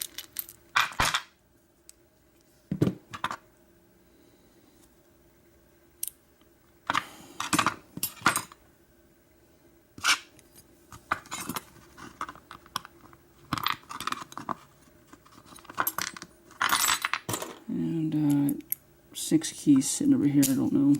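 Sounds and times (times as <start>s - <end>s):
small metal parts clinking: 0.0s - 1.3s, 15.4s - 17.6s.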